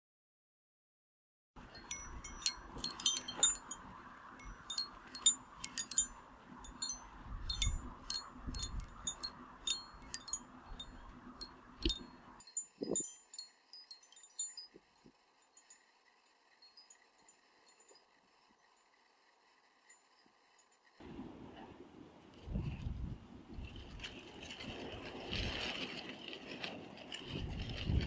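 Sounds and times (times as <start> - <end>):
chimes tinkling: 1.6 - 19.0.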